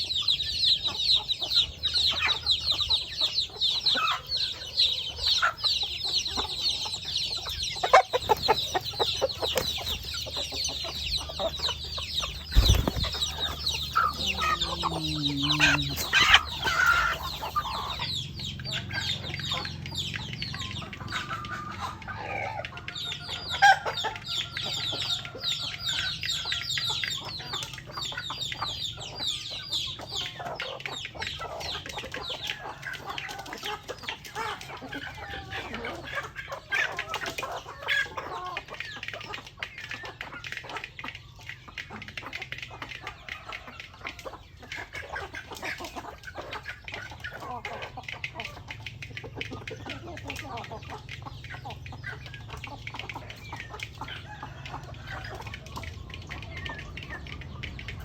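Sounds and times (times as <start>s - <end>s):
chickens clucking: 0.0s - 58.0s.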